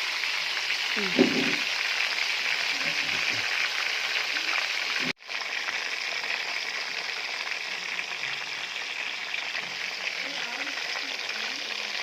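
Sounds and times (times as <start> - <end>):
chicken deep-frying in oil: 0.0 - 12.0.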